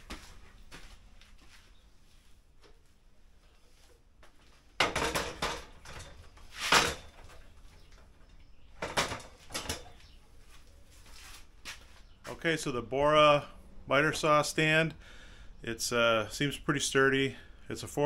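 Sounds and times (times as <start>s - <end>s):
clattering knocks of hard objects: 4.8s - 7.6s, 8.8s - 10.0s.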